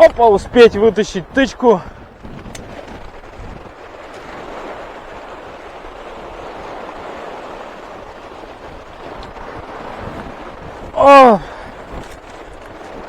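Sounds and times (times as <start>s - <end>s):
choppy storm waves: 0.0s - 13.0s
wind buffeting microphone: 0.0s - 13.0s
wind rushing: 0.0s - 13.0s.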